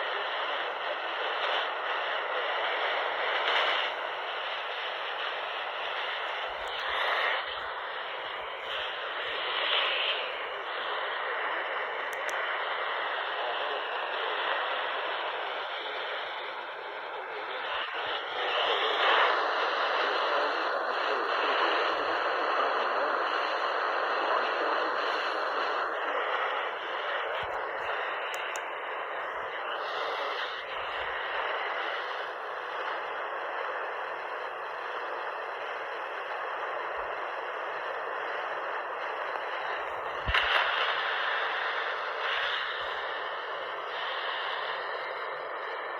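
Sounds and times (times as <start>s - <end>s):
radio static hiss: 0.0s - 45.9s
faint clicks: 12.0s - 12.5s, 27.4s - 28.8s.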